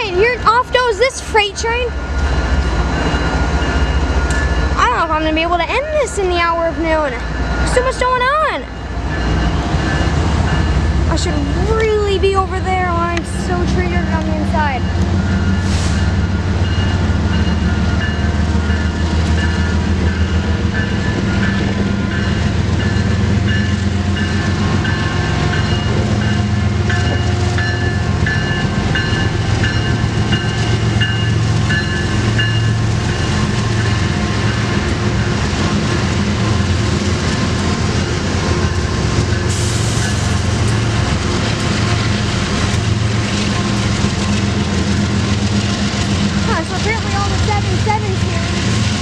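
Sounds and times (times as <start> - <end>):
diesel locomotive drone: 0.0 - 49.0.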